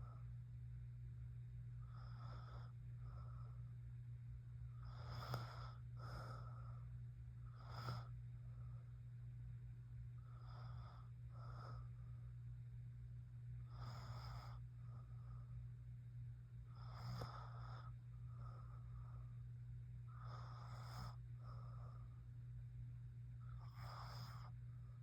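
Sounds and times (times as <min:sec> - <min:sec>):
woman snoring softly: 0:01.8 - 0:03.6, 0:04.7 - 0:06.8, 0:07.4 - 0:08.2, 0:10.2 - 0:11.9, 0:13.6 - 0:14.6, 0:16.6 - 0:18.0, 0:20.1 - 0:22.0, 0:23.4 - 0:24.6.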